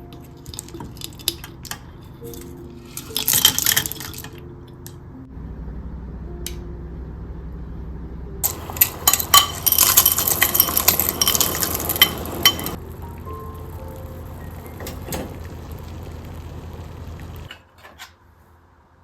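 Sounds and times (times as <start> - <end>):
dishes and utensils clinking: 0.0 - 4.4, 8.4 - 12.8
soft background music: 0.0 - 17.3
tap water running into sink: 11.0 - 17.5.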